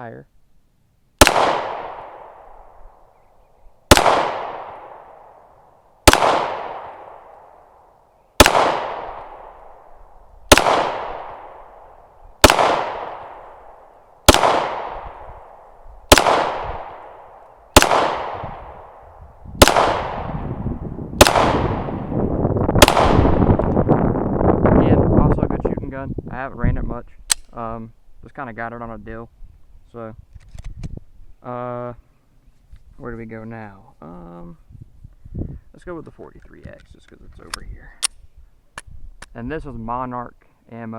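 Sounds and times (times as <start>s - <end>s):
pistol shots with echo: 1.2s - 2.7s, 3.9s - 7.6s, 8.4s - 9.9s, 10.5s - 20.6s, 21.2s - 22.2s, 22.8s - 23.6s.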